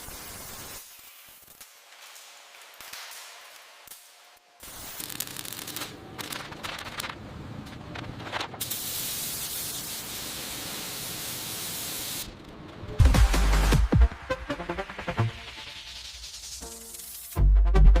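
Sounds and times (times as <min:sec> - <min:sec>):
steady hiss: 0:00.0 - 0:06.8, 0:08.6 - 0:12.4
crackly scraping and rubbing: 0:04.9 - 0:08.6.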